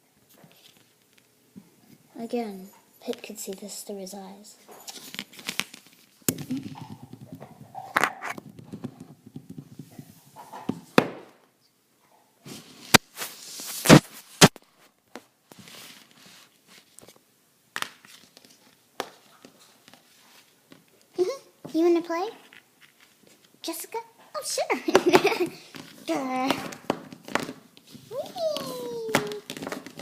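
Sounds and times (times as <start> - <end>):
rustling: 0.2 - 11.0, 12.4 - 17.2, 25.0 - 30.0.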